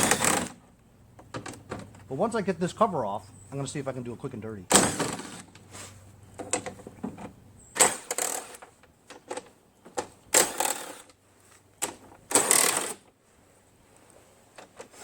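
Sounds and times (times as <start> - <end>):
impact driver hammering: 0.0 - 0.6.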